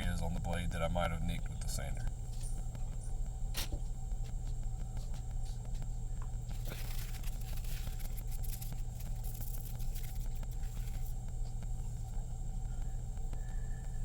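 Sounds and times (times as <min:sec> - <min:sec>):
steady low hum: 0:00.0 - 0:14.0
soft scratchy rubbing: 0:06.5 - 0:12.2.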